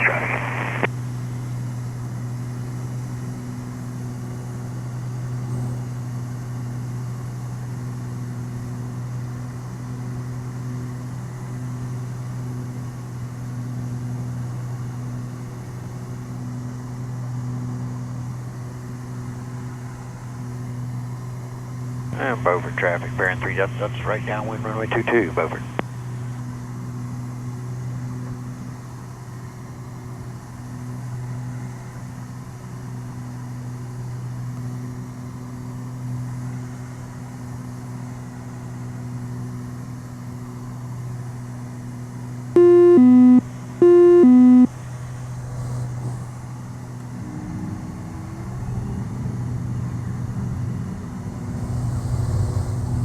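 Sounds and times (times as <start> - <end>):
propeller aircraft engines droning: 0.0 - 53.0
two-note electronic alert tone: 42.6 - 44.7.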